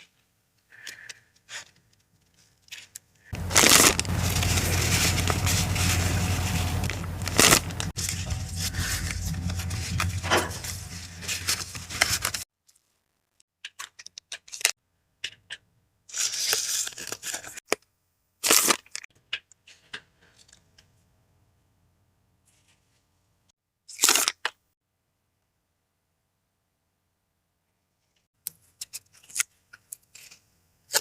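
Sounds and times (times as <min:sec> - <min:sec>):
packaging crinkling: 0:03.4 - 0:12.4.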